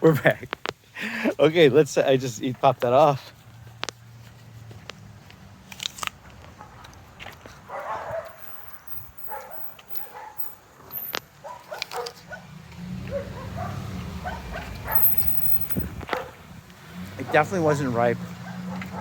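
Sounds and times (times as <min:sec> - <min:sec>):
dog barking: 0:07.7 - 0:08.4, 0:09.3 - 0:10.4, 0:11.4 - 0:12.5, 0:13.1 - 0:15.0, 0:16.1 - 0:16.4, 0:17.2 - 0:19.0.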